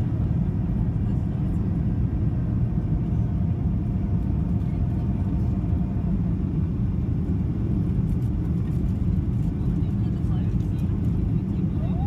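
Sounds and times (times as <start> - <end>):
jet engine cabin rumble: 0.0 - 12.0.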